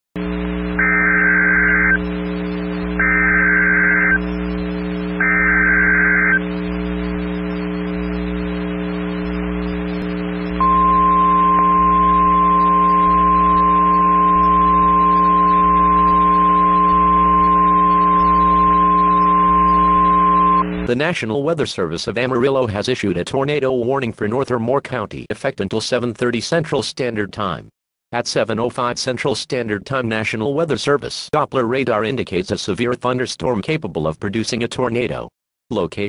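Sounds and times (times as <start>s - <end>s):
low electrical hum: 0.2s - 20.9s
buzzy data bursts: 0.3s - 20.9s
steady alert tone: 10.6s - 20.8s.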